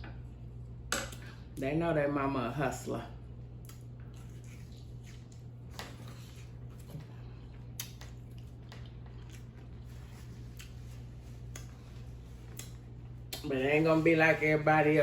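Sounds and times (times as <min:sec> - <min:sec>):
steady low hum: 0:00.0 - 0:15.0
person chewing food: 0:03.6 - 0:13.5.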